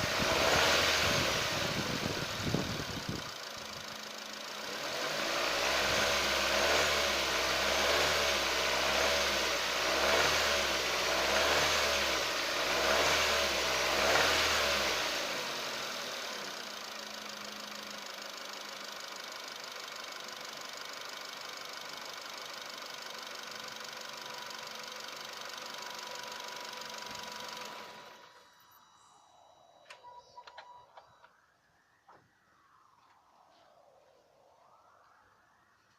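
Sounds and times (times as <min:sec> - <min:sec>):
car engine revving and idling: 0:00.0 - 0:30.8.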